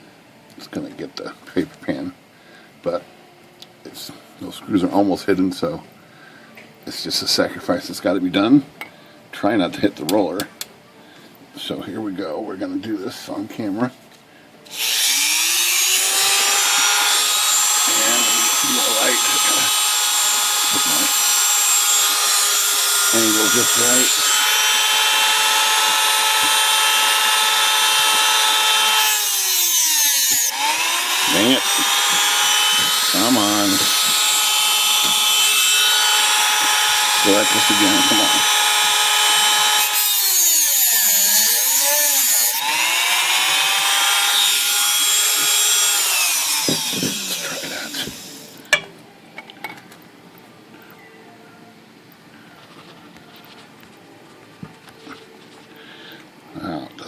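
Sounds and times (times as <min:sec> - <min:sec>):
rotary tool grinding metal: 0:14.7 - 0:48.6.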